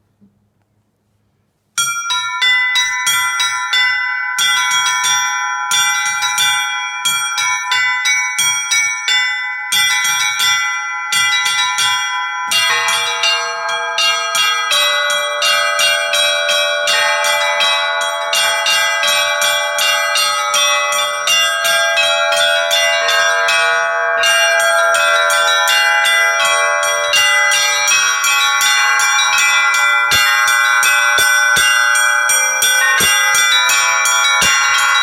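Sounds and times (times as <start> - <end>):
larger bells ringing: 1.8 - 35.0
small bells struck quickly: 1.8 - 35.0.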